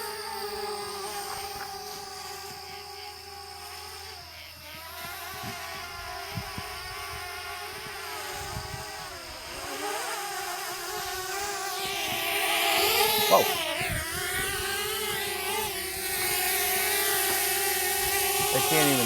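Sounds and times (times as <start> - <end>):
drone propellers whining: 0.0 - 19.0.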